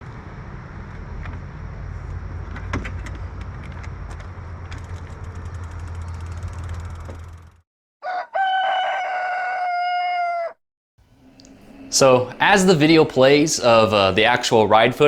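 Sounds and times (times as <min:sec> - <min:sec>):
bike tyres rumbling on trail: 0:00.5 - 0:07.6
bike clicks and rattles: 0:02.4 - 0:07.6
fast run of ticks: 0:03.0 - 0:07.6.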